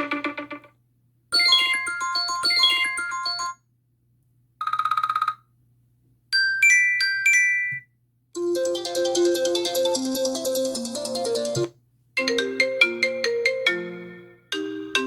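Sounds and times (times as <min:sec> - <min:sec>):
melodic phone chime: 0:01.4 - 0:03.6.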